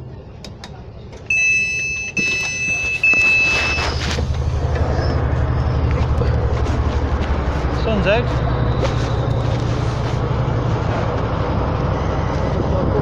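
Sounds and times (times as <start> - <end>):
train door warning beeping: 1.2 - 4.8
train rumbling: 2.2 - 13.0.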